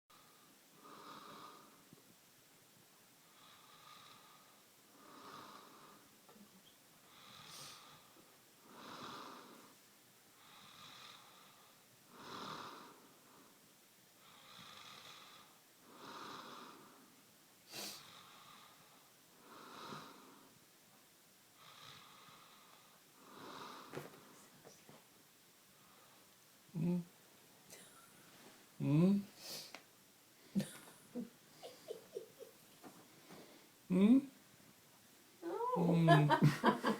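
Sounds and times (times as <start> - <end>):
man snoring softly: 0.1 - 1.8, 3.3 - 6.1, 7.1 - 9.8, 10.4 - 13.6, 14.2 - 17.1, 17.8 - 20.5, 21.6 - 24.1.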